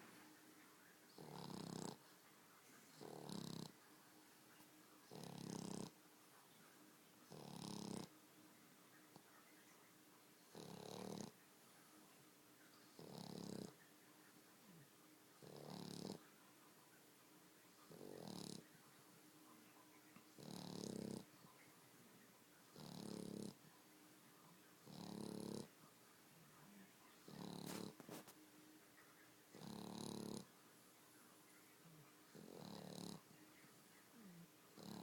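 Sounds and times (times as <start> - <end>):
dog snoring: 1.2 - 2.0, 2.9 - 3.8, 5.1 - 5.9, 7.3 - 8.1, 10.5 - 11.4, 12.9 - 13.8, 15.4 - 16.2, 17.9 - 18.6, 20.3 - 21.3, 22.7 - 23.6, 24.8 - 25.7, 27.2 - 28.3, 29.6 - 30.5, 32.3 - 33.3, 34.2 - 35.0.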